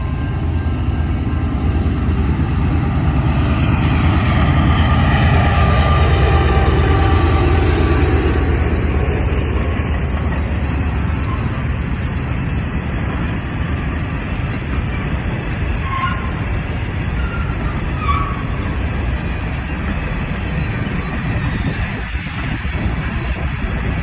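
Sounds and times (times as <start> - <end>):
train wheels rumbling on rail: 0.0 - 24.0
high squeaks: 15.1 - 21.6.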